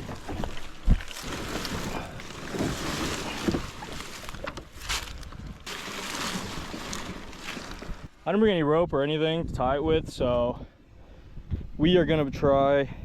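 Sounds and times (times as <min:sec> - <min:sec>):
plastic kayak hulls knocking: 0:00.0 - 0:08.2.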